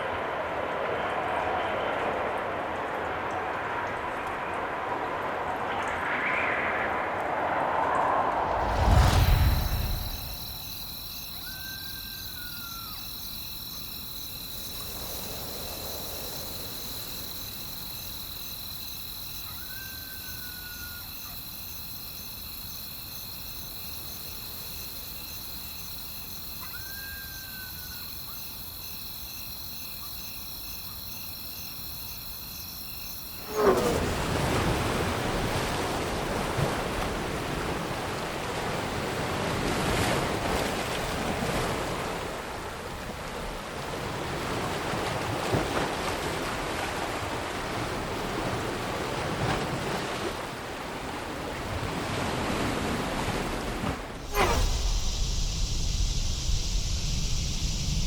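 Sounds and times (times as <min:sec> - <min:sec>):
wind: 0:00.0 - 0:58.0
surf: 0:03.4 - 0:10.6
insects trilling: 0:08.6 - 0:35.1, 0:54.2 - 0:58.0
whistle-like call: 0:11.3 - 0:13.0, 0:54.2 - 0:55.7.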